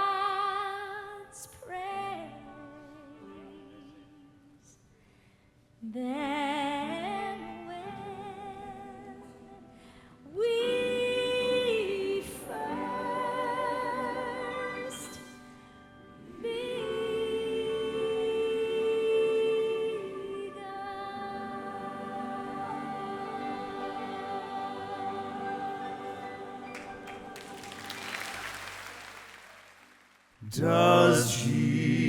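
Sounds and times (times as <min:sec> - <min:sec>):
gospel hymn singing: 0:10.4 - 0:15.4, 0:16.0 - 0:29.8, 0:30.4 - 0:32.0.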